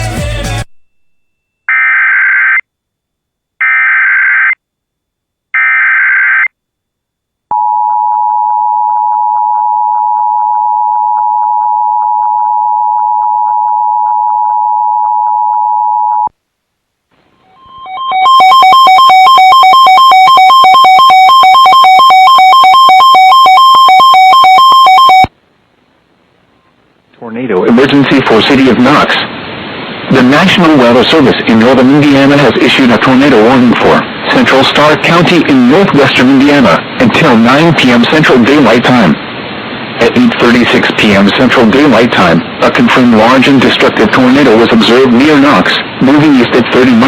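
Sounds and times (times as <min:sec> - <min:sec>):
loud two-tone alarm tone: 0:17.4 - 0:25.3
two-tone alert signal: 0:17.5 - 0:25.3.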